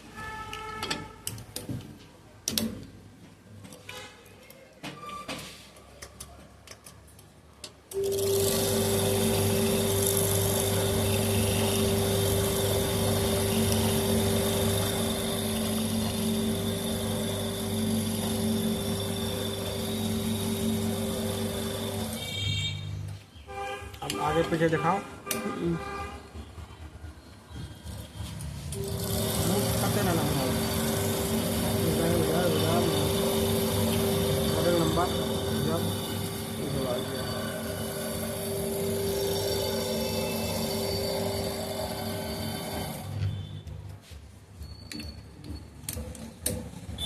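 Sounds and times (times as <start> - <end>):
electric motor humming and whining: 8.0 - 22.8, 28.7 - 43.6.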